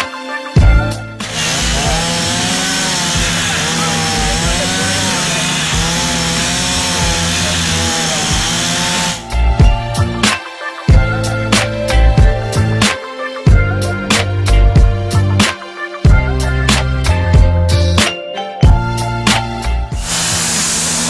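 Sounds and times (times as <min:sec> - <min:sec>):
background music: 0:00.0 - 0:21.0
chainsaw running at high speed: 0:00.6 - 0:10.2, 0:19.4 - 0:21.0.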